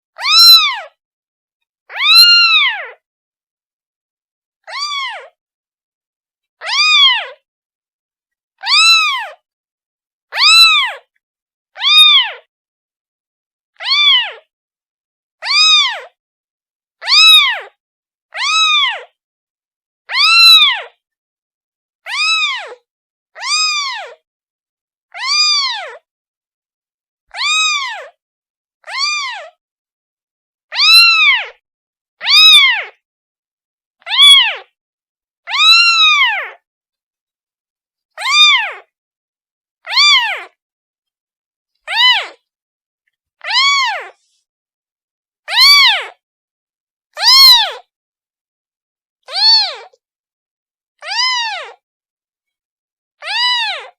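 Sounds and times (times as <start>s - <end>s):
kitten meowing: 0.2s - 0.9s, 1.9s - 3.0s, 4.6s - 5.4s, 6.6s - 7.4s, 8.6s - 9.4s, 10.3s - 11.1s, 11.8s - 12.5s, 13.8s - 14.4s, 15.4s - 16.1s, 17.0s - 17.7s, 18.3s - 19.1s, 20.1s - 21.0s, 22.1s - 22.8s, 23.4s - 24.2s, 25.1s - 26.0s, 27.3s - 28.2s, 28.8s - 29.6s, 30.7s - 31.6s, 32.2s - 33.0s, 34.1s - 34.7s, 35.5s - 36.6s, 38.2s - 38.9s, 39.9s - 40.6s, 41.9s - 42.4s, 43.4s - 44.2s, 45.5s - 46.2s, 47.2s - 47.9s, 49.2s - 50.0s, 51.0s - 51.8s, 53.2s - 53.9s.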